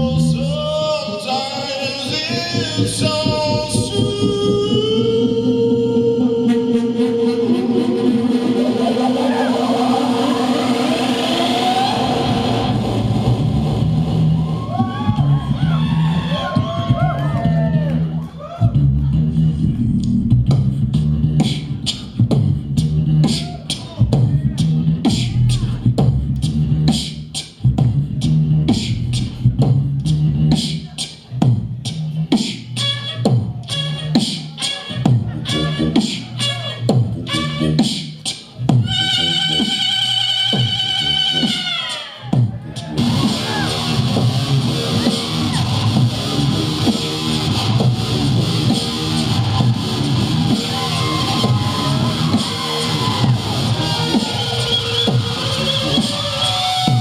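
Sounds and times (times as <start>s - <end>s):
beatboxing percussive hits: 2.0s - 12.8s, 18.7s - 57.0s
hummed low bass line: 2.3s - 30.8s, 42.5s - 56.1s
higher vocal melody: 3.8s - 13.2s.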